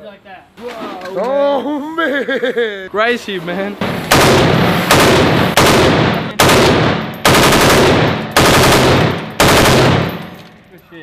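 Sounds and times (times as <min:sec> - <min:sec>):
machine gun bursts: 0:04.1 - 0:10.4.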